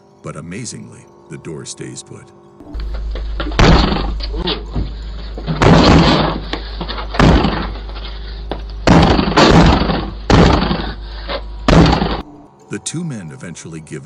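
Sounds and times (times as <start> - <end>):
low microphone hum: 2.6 - 12.4
heavy bangs on a door: 3.4 - 8.0, 8.8 - 11.0, 11.6 - 12.2.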